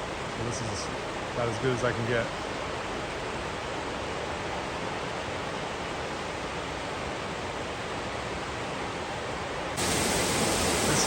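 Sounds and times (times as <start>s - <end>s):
waterfall roaring: 9.8s - 11.0s.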